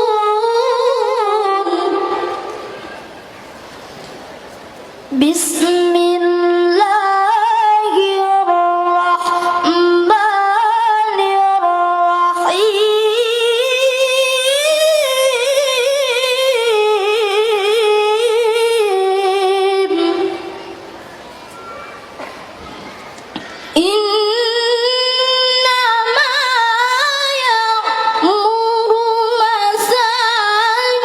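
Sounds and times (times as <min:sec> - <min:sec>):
person chanting recitation: 0:00.0 - 0:02.8, 0:05.1 - 0:20.8.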